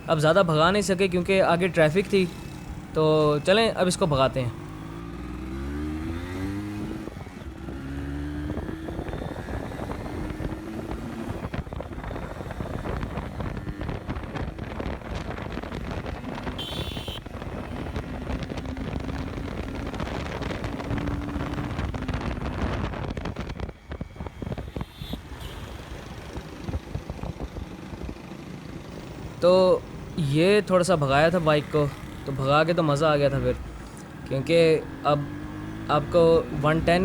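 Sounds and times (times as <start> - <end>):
two-stroke motorcycle engine accelerating: 4.5 - 24.9, 30.8 - 37.0
wind noise on microphone: 8.4 - 28.3.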